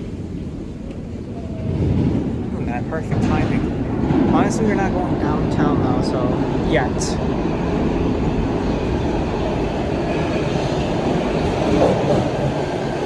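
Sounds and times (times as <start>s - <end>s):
subway train running: 0.0s - 13.0s.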